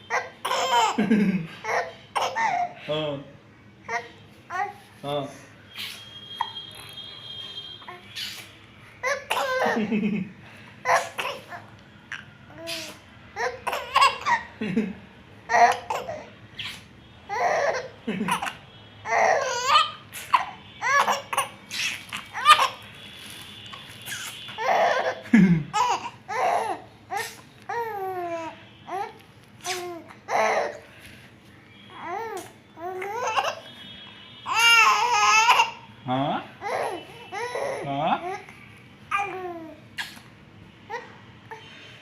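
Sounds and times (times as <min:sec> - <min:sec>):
baby laughing: 0:00.1 - 0:02.8, 0:08.0 - 0:10.2, 0:10.8 - 0:14.8, 0:15.5 - 0:22.8, 0:24.1 - 0:30.8, 0:32.0 - 0:33.7, 0:34.5 - 0:35.8
baby babbling: 0:03.9 - 0:04.8, 0:25.8 - 0:30.8, 0:31.9 - 0:33.6, 0:34.5 - 0:35.8, 0:39.1 - 0:40.1.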